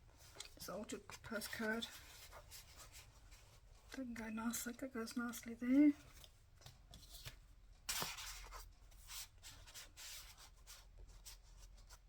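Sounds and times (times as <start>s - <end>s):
paper rustling and sliding: 7.0s - 12.0s.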